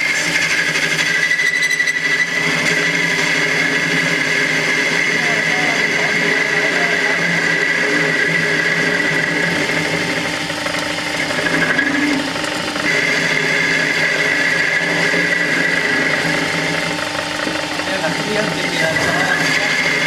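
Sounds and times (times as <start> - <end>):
high machine whine: 0.0 - 20.0
machine motor hum: 2.1 - 20.0.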